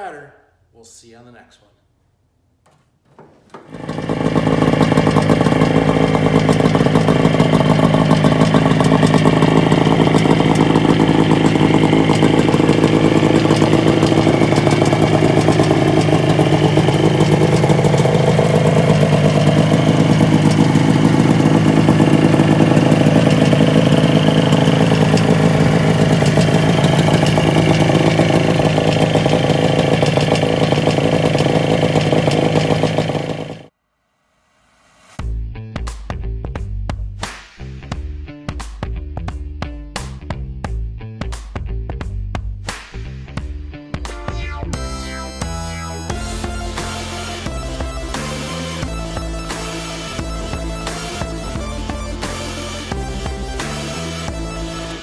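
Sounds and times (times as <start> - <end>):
snowmobile engine running: 3.7 - 33.7, 44.2 - 54.6.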